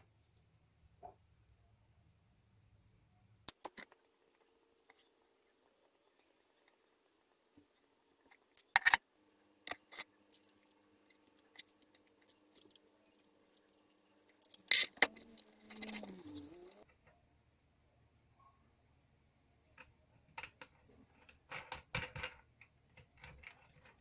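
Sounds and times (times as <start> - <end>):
hand tools clicking and snipping: 8.6 - 9.0, 9.7 - 16.8.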